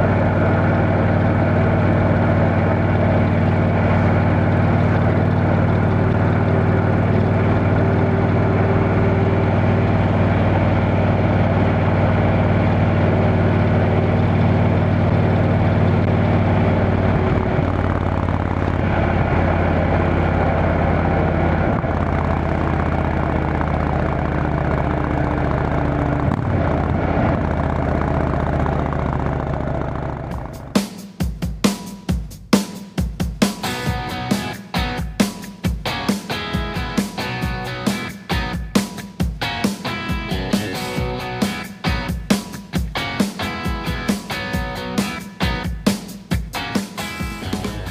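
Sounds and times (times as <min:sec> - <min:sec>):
motorcycle engine running: 0:00.0 - 0:47.9.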